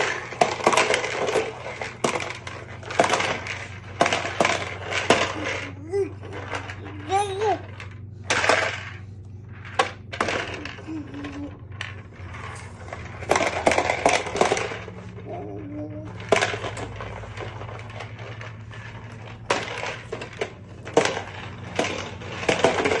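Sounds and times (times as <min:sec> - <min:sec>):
toy vacuum motor hum: 0:00.0 - 0:23.0
clattering and rattling knocks: 0:16.2 - 0:23.0.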